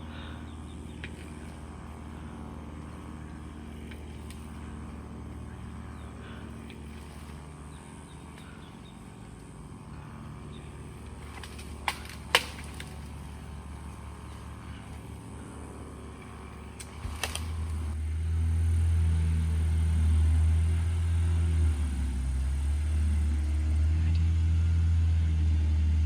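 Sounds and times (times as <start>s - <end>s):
engine running: 0.0s - 26.0s
sharp cracks: 11.0s - 14.0s, 16.7s - 18.0s.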